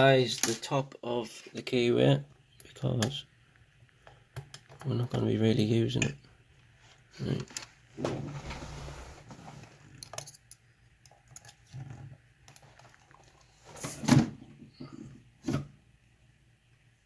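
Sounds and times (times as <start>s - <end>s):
lock picks clicking and scraping: 9.9s - 11.8s.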